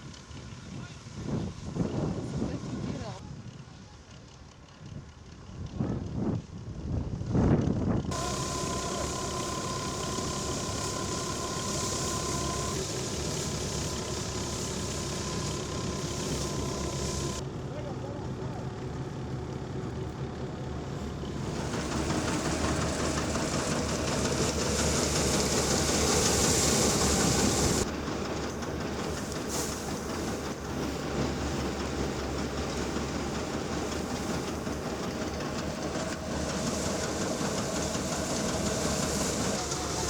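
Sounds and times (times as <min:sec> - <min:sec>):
machinery humming: 0:08.1 - 0:40.0.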